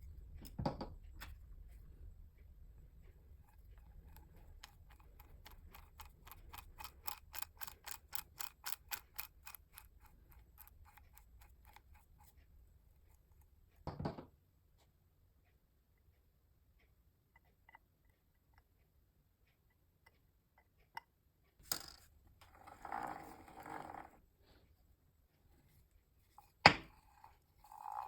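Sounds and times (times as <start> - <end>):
hand drill clicking: 4.6 - 11.8.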